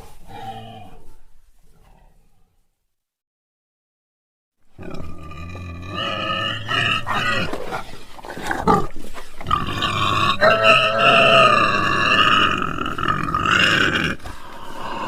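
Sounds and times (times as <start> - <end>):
animal roaring and grunting: 4.8 - 7.8, 9.5 - 15.0.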